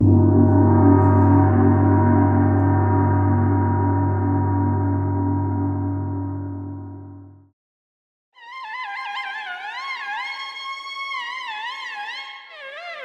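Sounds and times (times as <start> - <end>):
low ringing instrument tone: 0.0 - 7.4
steady throbbing: 0.0 - 7.4.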